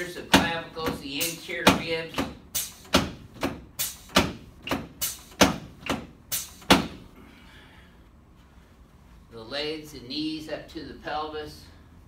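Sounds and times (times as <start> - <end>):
sharp thumps of chiropractic thrusts: 0.2 - 7.2.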